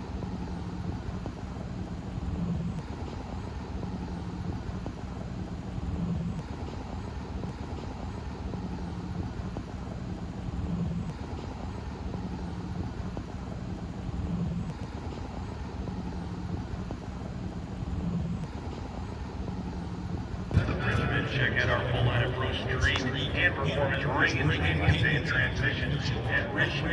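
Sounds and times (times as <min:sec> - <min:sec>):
outdoor background noise: 0:00.0 - 0:26.9
low engine drone: 0:19.2 - 0:26.9.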